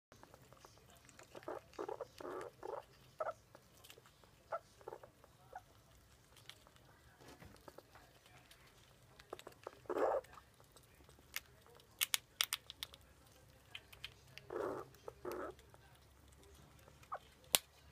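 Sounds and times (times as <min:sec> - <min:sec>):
squirrel eating a nut: 0:00.1 - 0:17.9
nut clicking: 0:11.3 - 0:14.6.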